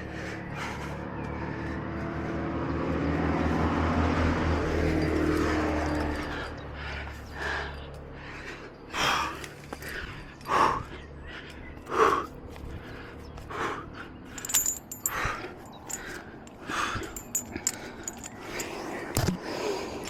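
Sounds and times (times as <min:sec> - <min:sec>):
person breathing hard: 0:00.0 - 0:02.7, 0:05.3 - 0:20.0
metal climbing gear clinking: 0:04.7 - 0:06.6, 0:14.2 - 0:20.0.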